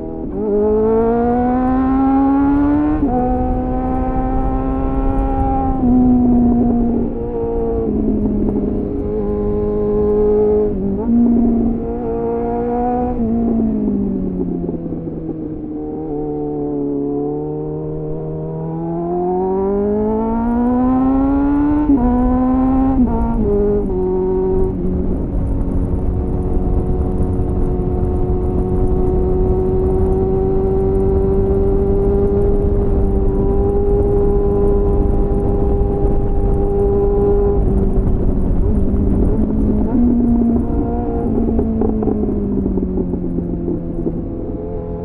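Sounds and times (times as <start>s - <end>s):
motorcycle engine revving: 0.0s - 45.0s
wind rush: 19.6s - 45.0s.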